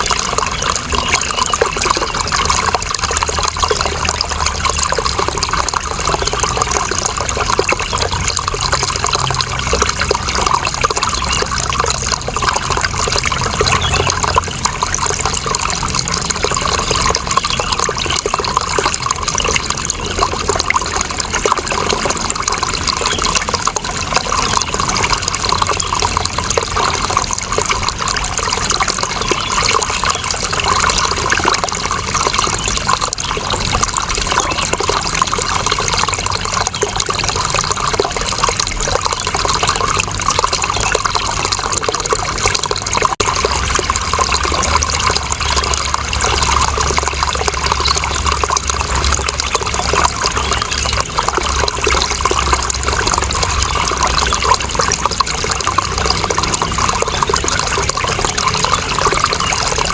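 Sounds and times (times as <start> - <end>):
water running and trickling: 0.0 - 59.9.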